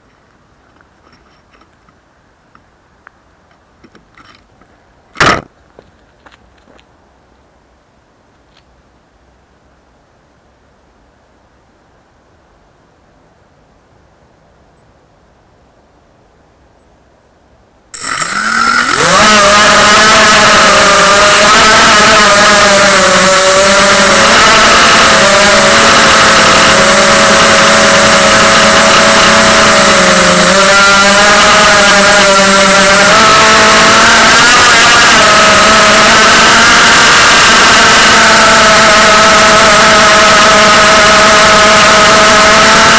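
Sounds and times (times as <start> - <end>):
quadcopter motors whining: 18.0 - 42.9.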